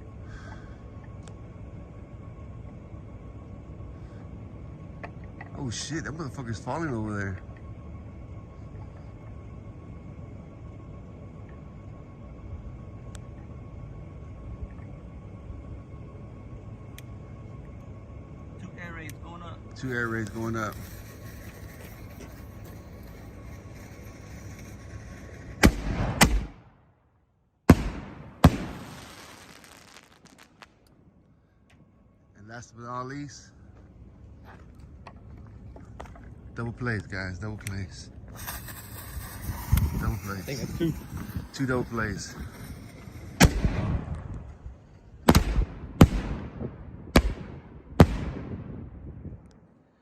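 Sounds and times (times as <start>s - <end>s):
firework bangs: 20.0s - 26.6s, 27.7s - 30.8s, 38.3s - 44.3s
rumbling echo: 27.7s - 30.8s, 42.2s - 49.3s.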